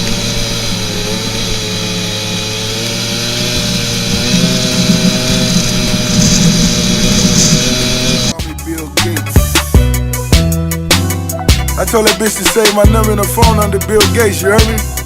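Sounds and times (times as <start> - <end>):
snowmobile engine running: 0.0 - 8.4.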